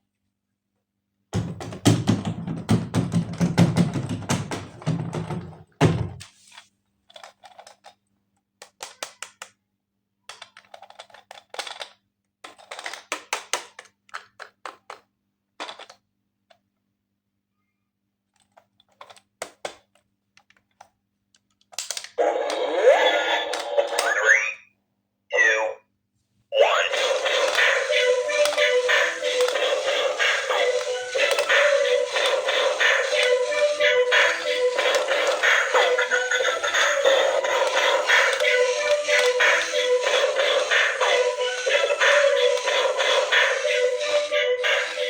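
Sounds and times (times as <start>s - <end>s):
plastic toy parts clicking: 7.0s - 9.6s, 10.2s - 16.7s, 18.2s - 22.2s, 31.2s - 31.6s.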